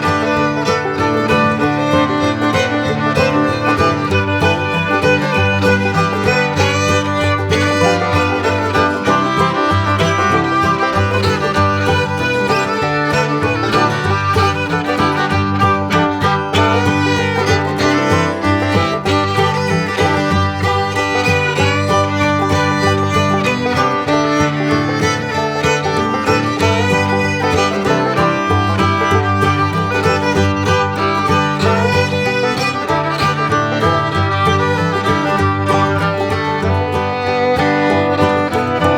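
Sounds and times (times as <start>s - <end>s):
upbeat bluegrass fiddle tune: 0.0s - 38.9s.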